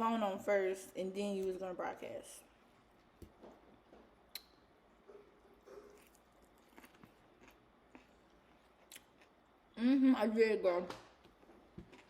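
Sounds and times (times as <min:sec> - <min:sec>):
chewing and mouth noises: 0:04.3 - 0:09.6, 0:11.3 - 0:12.0.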